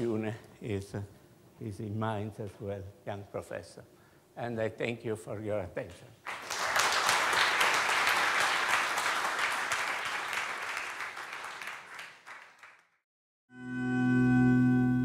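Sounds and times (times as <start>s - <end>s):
audience applauding: 6.3s - 13.0s.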